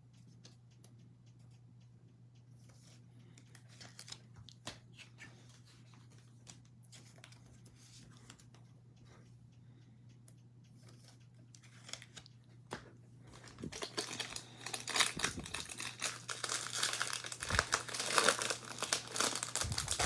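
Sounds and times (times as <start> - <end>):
cards and wrappers rustling: 11.6 - 20.0.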